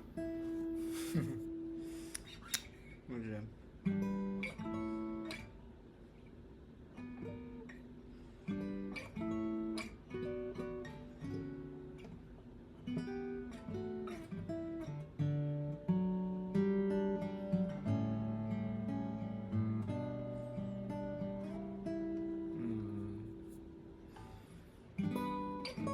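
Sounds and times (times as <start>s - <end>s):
acoustic guitar plucked notes and chords: 0.0s - 2.2s, 8.5s - 25.9s.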